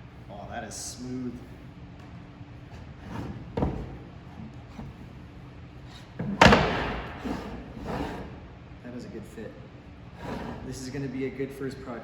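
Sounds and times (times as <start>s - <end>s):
wooden stool parts knocking: 6.2s - 7.5s
loud wooden clack: 6.2s - 8.2s.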